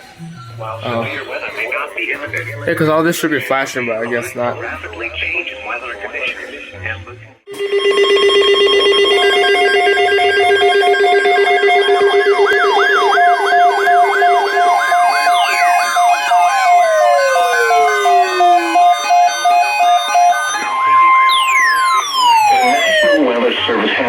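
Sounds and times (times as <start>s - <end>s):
steady alert tones: 7.5s - 23.3s
repeating siren-like sweep: 8.1s - 23.4s
long falling wail: 10.1s - 23.2s.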